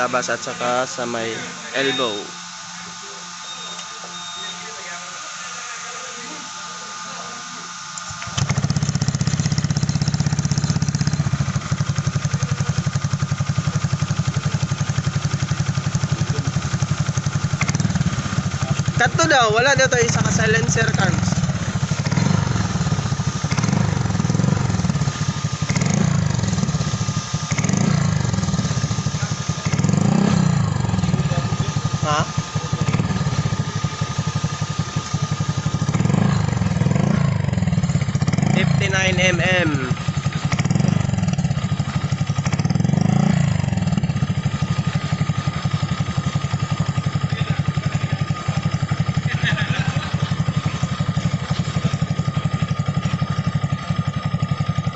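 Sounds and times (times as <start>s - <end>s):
scooter engine idling: 0.0s - 54.9s
scooter throttle blip: 1.6s - 4.7s, 21.1s - 38.4s.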